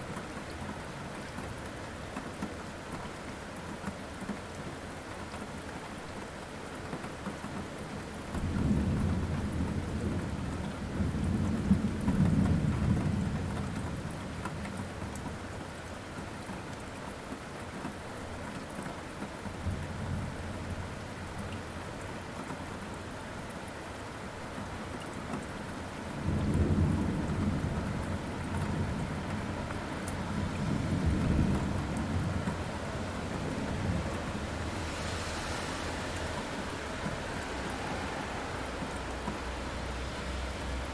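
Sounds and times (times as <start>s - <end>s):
rain hiss: 0.0s - 40.9s
low rolls of thunder: 8.4s - 14.6s, 26.1s - 39.8s.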